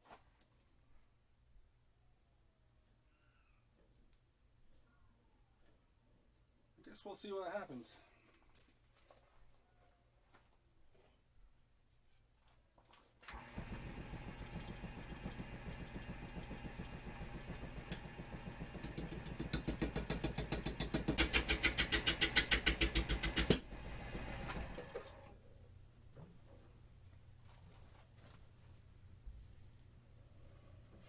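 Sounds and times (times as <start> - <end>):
wood lathe knocking rhythmically: 13.4 - 25.2.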